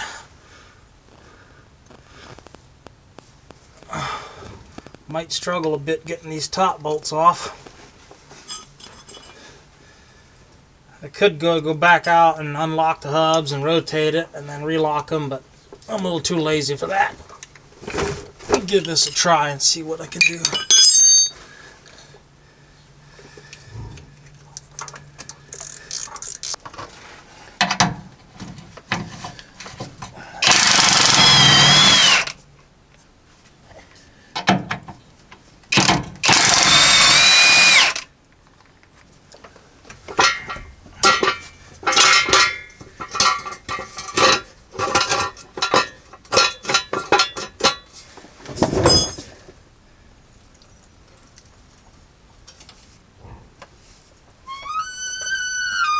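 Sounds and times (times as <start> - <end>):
impact wrench hammering on bolts: 20.2 - 21.6, 30.4 - 32.4, 35.8 - 38.0, 40.1 - 47.8
hand ratchet clicking: 24.6 - 26.6, 30.4 - 32.4, 35.8 - 38.1.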